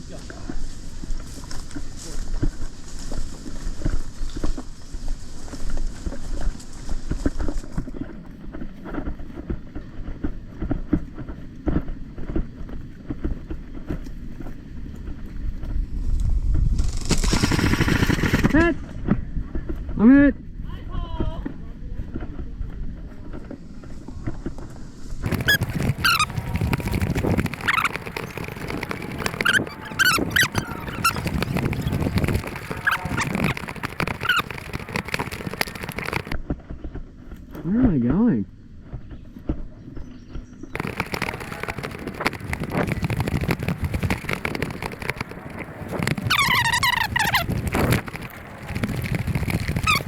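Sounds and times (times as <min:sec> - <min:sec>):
rustling: 0:16.7 - 0:18.6, 0:25.2 - 0:36.4, 0:40.8 - 0:50.0
footsteps: 0:25.2 - 0:36.4, 0:40.8 - 0:50.0
short pitch-bending squeaks: 0:25.2 - 0:36.4, 0:40.8 - 0:50.0.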